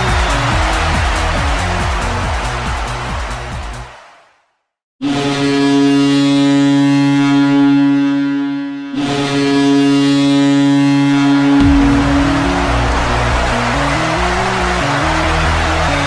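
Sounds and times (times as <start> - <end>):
deep goal horn blasts: 10.8 - 16.0.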